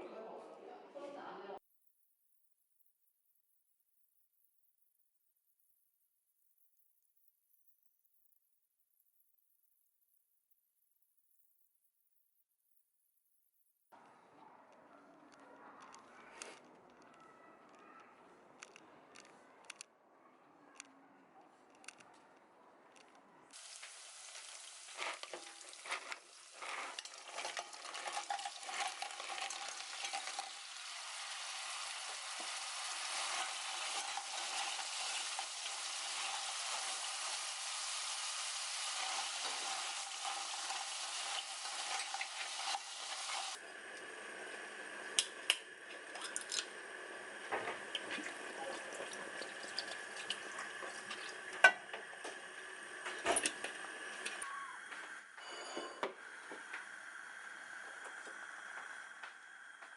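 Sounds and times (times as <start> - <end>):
utensil clicking and scraping: 18.6 - 19.9, 20.7 - 23.2
food sizzling in a frying pan: 23.5 - 54.7.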